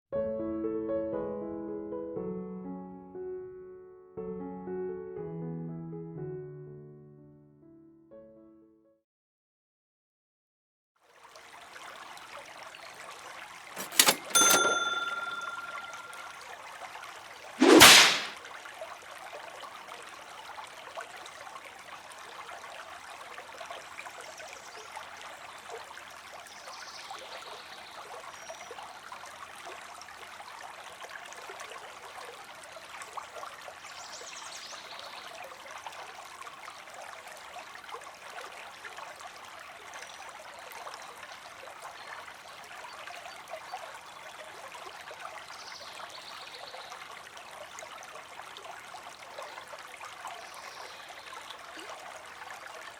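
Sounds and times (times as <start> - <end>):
creek water streaming: 11.1 - 52.9.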